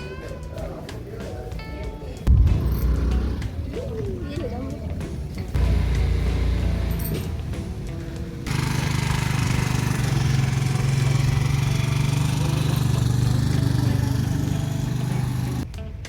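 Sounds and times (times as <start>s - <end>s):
small motor humming: 8.5s - 15.6s.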